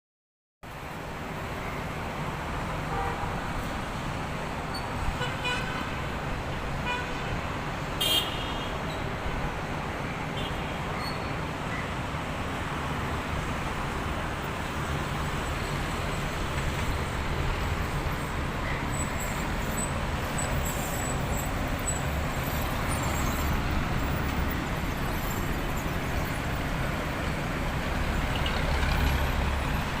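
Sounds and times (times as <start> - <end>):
road traffic noise: 0.6 - 30.0
vehicle horn toots: 8.0 - 8.7.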